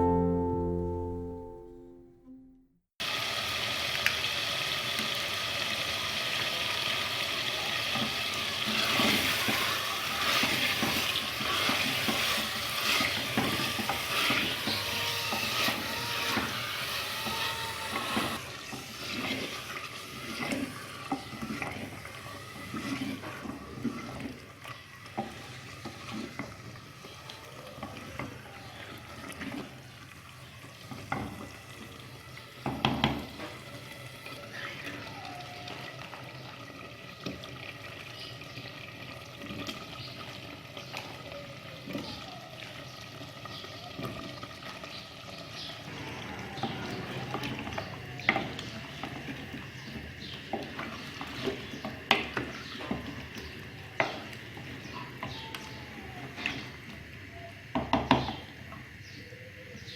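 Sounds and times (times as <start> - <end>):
curry sizzling in a pot: 3.0 - 46.0.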